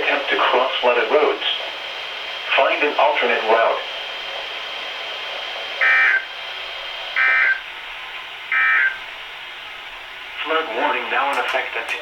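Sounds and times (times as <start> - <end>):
radio hiss: 0.0 - 12.0
digital data bursts: 5.8 - 6.3.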